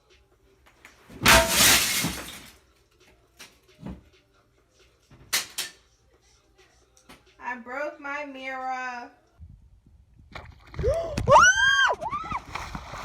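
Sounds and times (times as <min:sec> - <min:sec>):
mirror crashing and shattering: 0:01.1 - 0:02.6, 0:05.3 - 0:05.8.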